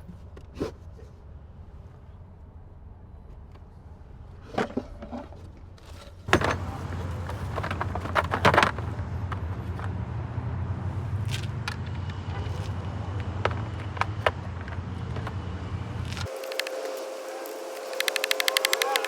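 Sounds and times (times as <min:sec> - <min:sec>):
tools and parts clicking: 0:17.8 - 0:19.0.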